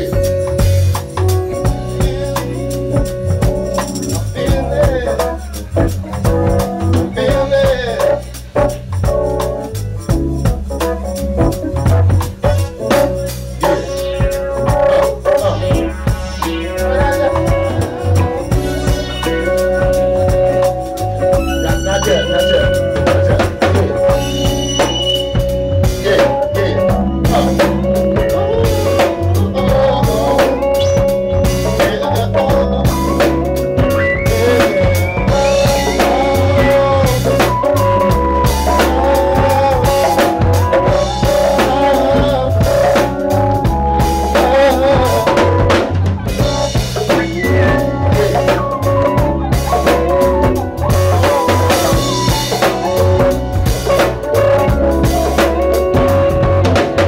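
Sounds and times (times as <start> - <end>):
drum kit beat: 0.0 - 57.0
live band playing soul music: 0.0 - 57.0.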